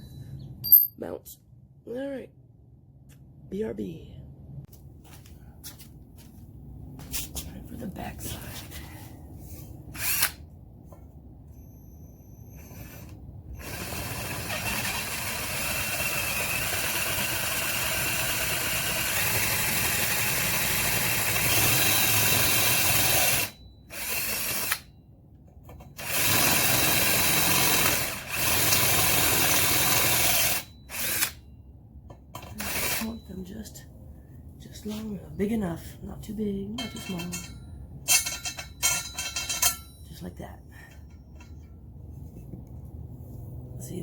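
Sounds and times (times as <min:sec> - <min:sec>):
power drill boring metal: 0:12.6 - 0:24.8, 0:26.0 - 0:31.4, 0:32.6 - 0:33.1.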